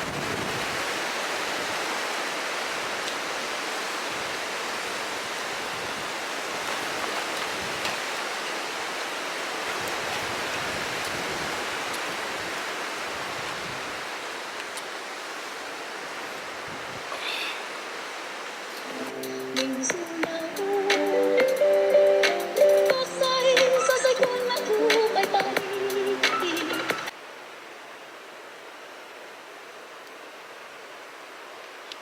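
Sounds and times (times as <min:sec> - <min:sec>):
surf breaking on beach: 0:00.0 - 0:17.8
strong wind: 0:00.0 - 0:18.2.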